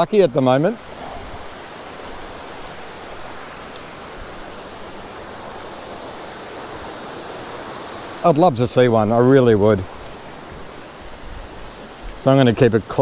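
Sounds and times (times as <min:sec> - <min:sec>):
creek water rushing: 0:00.0 - 0:13.0.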